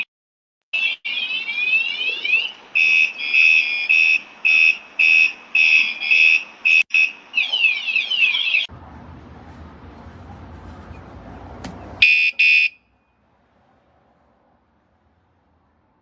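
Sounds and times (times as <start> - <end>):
bike alarm siren: 0.8 - 8.7, 12.0 - 12.8.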